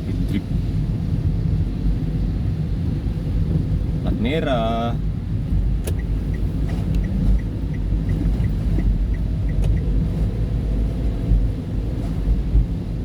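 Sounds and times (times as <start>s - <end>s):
car driving rumble: 0.0s - 13.0s
light regular ticking: 5.8s - 10.0s.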